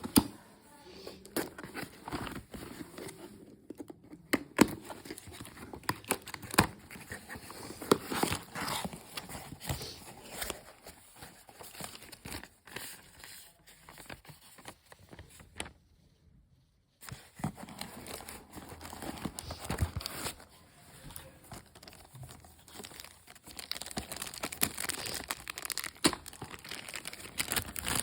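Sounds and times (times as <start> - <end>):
packaging wrapping crinkling: 21.4 - 28.0.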